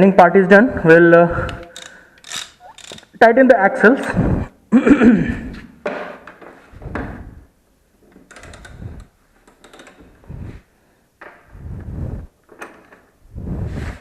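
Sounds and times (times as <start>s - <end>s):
tool clicking: 1.4s - 3.2s.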